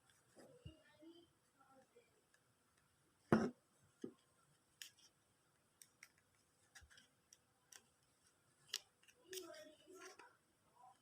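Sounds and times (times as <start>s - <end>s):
faint clicks and taps: 1.7s - 2.9s, 4.0s - 11.0s.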